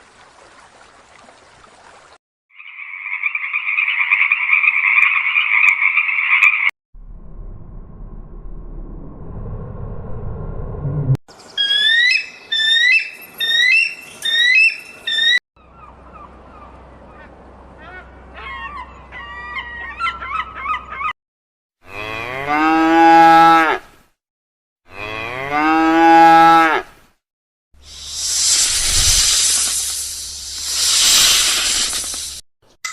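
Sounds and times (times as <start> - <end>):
low hum: 7.0 - 11.2
high-pitched animal calls: 11.6 - 21.1
cow mooing: 21.8 - 23.8.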